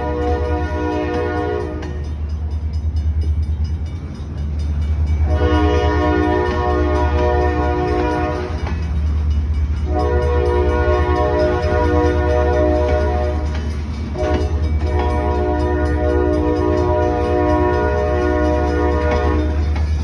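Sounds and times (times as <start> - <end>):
train horn blasts: 0.0 - 2.3, 5.2 - 8.8, 9.8 - 20.0.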